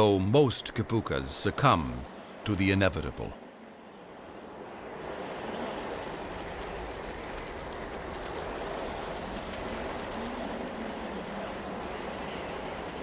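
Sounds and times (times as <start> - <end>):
lava rumbling roar: 5.0 - 13.0.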